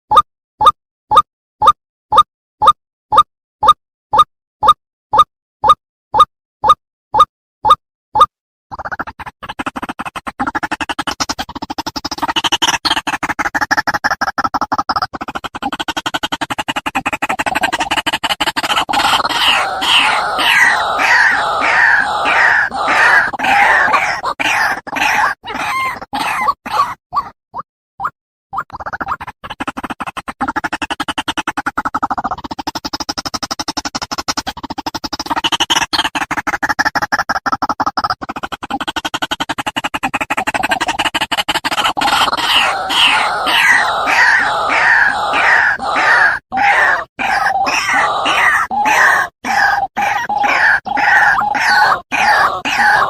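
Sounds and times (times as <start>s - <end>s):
harsh repeated bird calls: 17.8s - 27.0s, 41.7s - 53.0s
waterhen croaks: 18.8s - 27.0s, 42.0s - 53.0s
waterhen calling: 19.0s - 26.9s.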